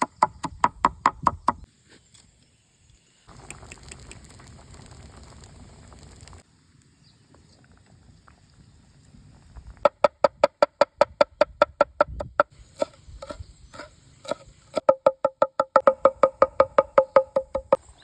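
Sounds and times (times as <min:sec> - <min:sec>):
knife chopping on wooden board: 0:12.0 - 0:17.8.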